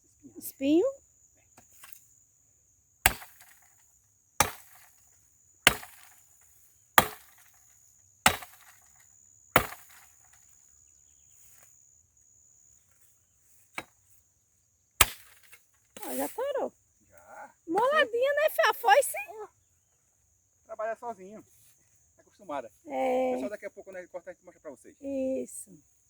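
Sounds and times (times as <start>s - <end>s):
blade chopping wood: 3.0s - 3.7s, 4.4s - 5.0s, 5.7s - 6.2s, 7.0s - 7.6s, 8.2s - 9.0s, 9.6s - 10.4s, 15.0s - 16.2s.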